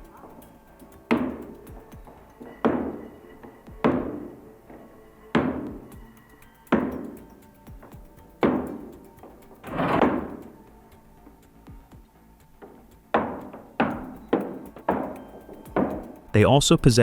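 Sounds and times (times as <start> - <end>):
heavy percussive music hits: 0.0 - 3.0, 5.4 - 11.0.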